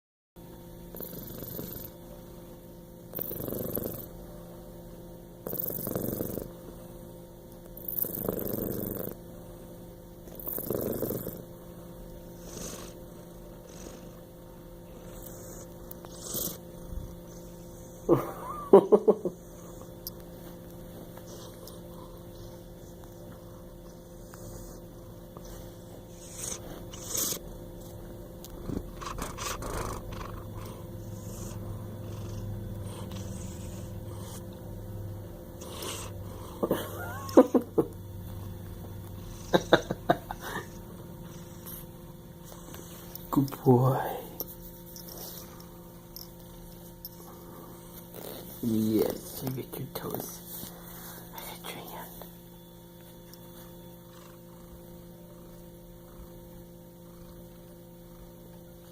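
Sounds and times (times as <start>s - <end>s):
electrical mains hum: 0.4s - 58.9s
cat snoring: 0.9s - 2.0s, 3.1s - 4.2s, 5.4s - 6.6s, 7.7s - 9.3s, 10.2s - 11.6s, 12.2s - 18.1s, 25.8s - 27.5s, 28.4s - 34.6s, 35.5s - 37.4s, 40.6s - 43.1s, 47.2s - 49.4s.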